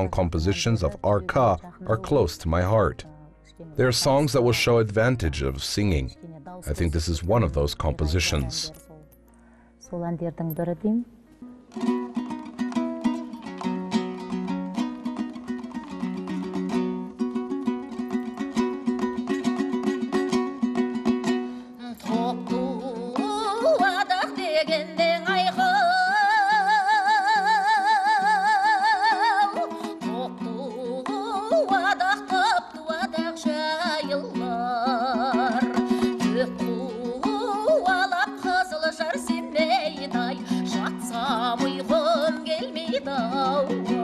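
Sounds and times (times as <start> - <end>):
strummed plucked strings: 10.5 - 44.0
person singing with vibrato: 21.6 - 44.0.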